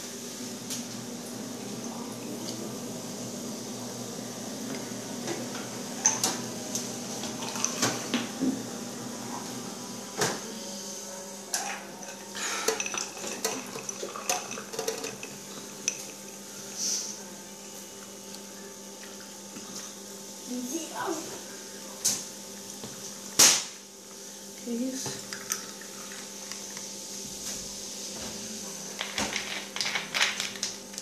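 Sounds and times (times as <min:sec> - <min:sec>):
dishes and cutlery clinking: 0:11.6 - 0:16.1.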